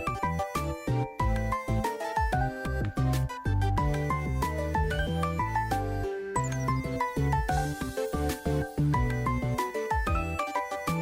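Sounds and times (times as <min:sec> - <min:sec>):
upbeat instrumental music: 0:00.0 - 0:11.0.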